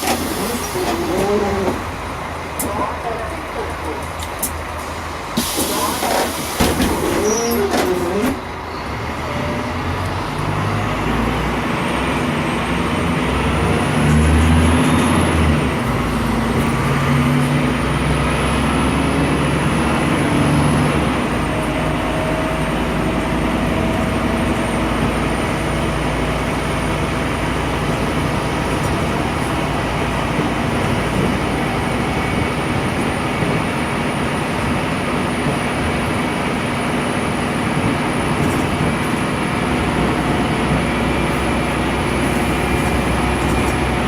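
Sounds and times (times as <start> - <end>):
diesel bus engine accelerating: 0.0 - 44.0.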